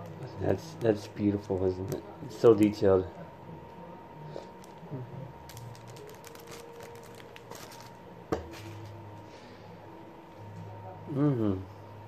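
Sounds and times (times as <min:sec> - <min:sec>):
packaging crinkling: 0:04.4 - 0:08.0.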